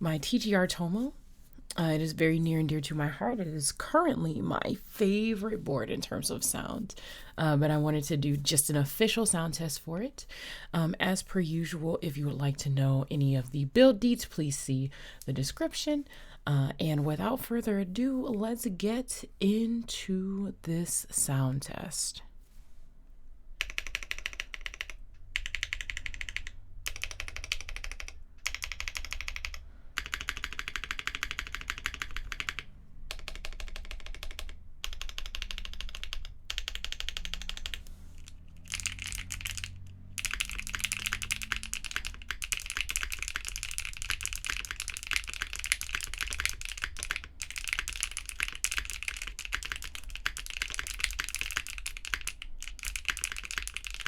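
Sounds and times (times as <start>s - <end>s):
mechanical keyboard typing: 23.6s - 54.0s.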